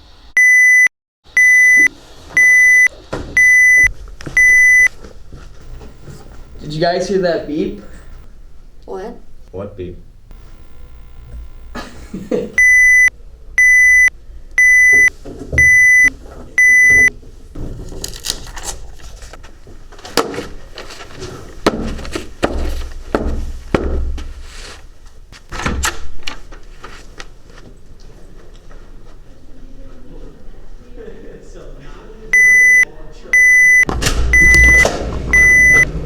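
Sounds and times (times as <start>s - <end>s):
smoke alarm beeps: 0.4s - 5.0s, 5.6s - 8.3s, 10.3s - 17.1s, 32.4s - 35.9s
rustling: 1.8s - 11.7s, 15.0s - 25.5s
thumps and knocks: 2.9s - 6.7s, 21.6s - 24.4s.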